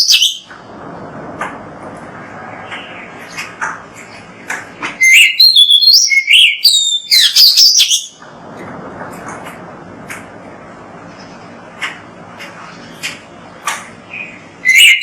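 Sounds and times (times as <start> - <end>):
bird chirping and whistling: 0.0 - 0.5, 5.0 - 8.2, 14.1 - 15.0.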